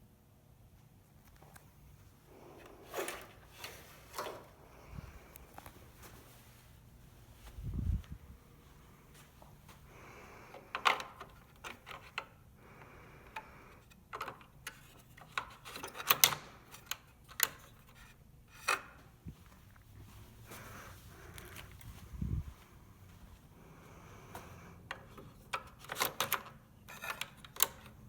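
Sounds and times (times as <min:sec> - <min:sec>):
printer parts clicking and knocking: 0:10.6 - 0:12.4, 0:14.0 - 0:18.0, 0:24.9 - 0:28.0.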